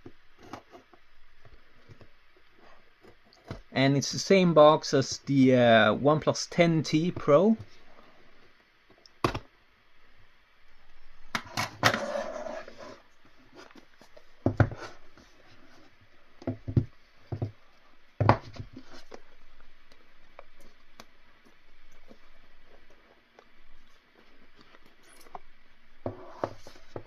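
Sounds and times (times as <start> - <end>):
cardboard box scraping slide: 11.9 - 13.1.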